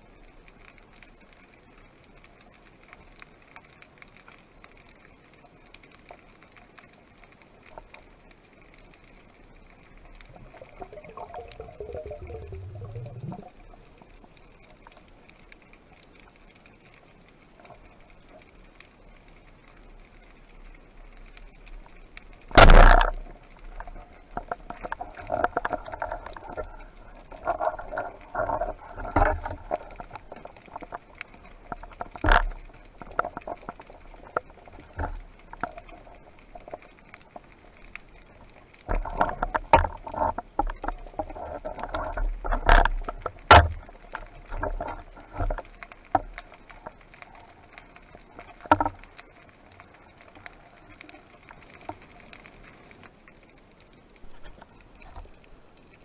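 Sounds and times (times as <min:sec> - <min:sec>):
crackling clicks underwater: 0:00.0 - 0:56.0
sharp knocks in water: 0:22.5 - 0:26.6, 0:42.6 - 0:45.6.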